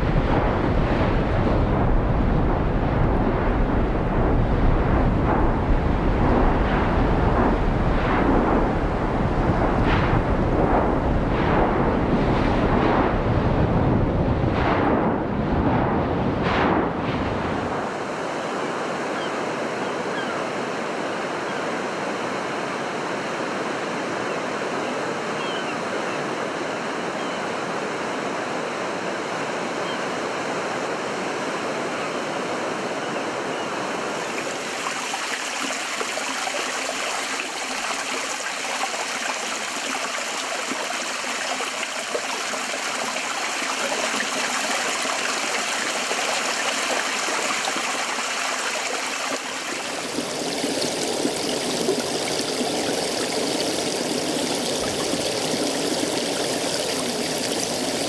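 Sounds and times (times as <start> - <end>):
stream water rushing: 33.8 - 58.0.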